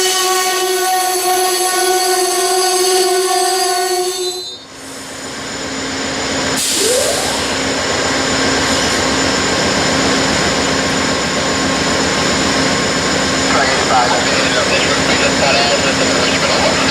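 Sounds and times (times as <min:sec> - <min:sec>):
train wheels rumbling on rail: 0:04.6 - 0:16.9
brief rising whine: 0:06.5 - 0:16.9.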